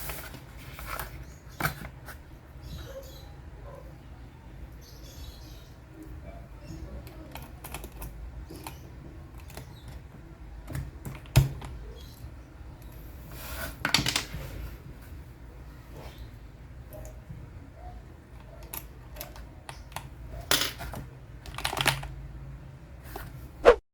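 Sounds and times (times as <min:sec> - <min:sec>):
mechanical keyboard clicks: 0:07.0 - 0:10.0, 0:21.4 - 0:22.2.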